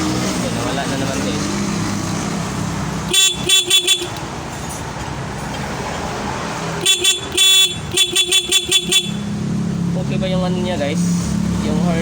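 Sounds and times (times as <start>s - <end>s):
scooter horn beeps: 3.1s - 4.2s, 6.8s - 9.3s.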